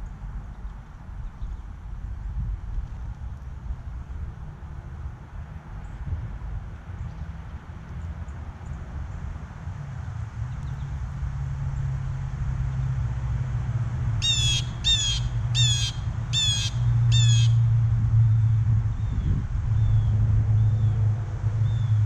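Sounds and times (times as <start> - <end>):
blue jay harsh calls: 14.2 - 17.6.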